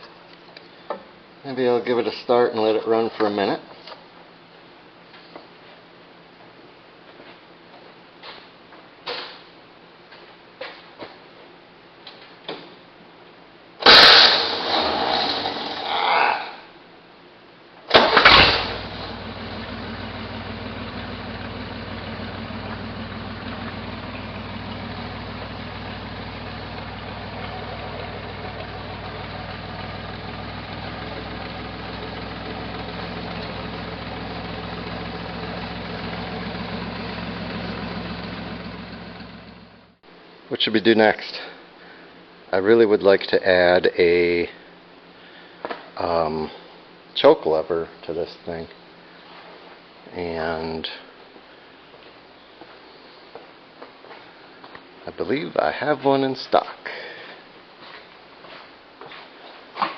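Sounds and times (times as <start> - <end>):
car engine cranking and idling: 13.8 - 15.6, 17.9 - 40.0.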